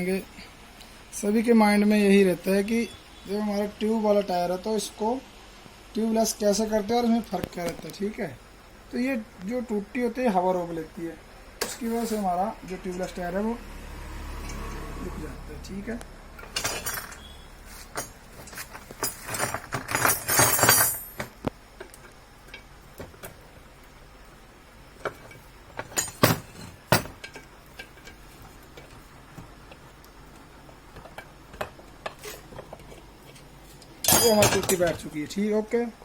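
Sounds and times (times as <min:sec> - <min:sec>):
metal clinking on wheel rim: 0:16.4 - 0:21.3, 0:34.0 - 0:35.0.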